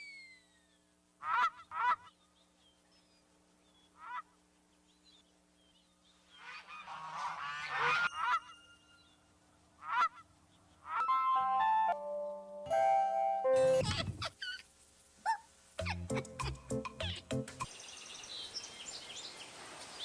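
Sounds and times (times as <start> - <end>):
faint bird chirps: 0.0 - 1.0
geese honking: 1.2 - 2.1, 6.4 - 8.9, 9.8 - 11.8.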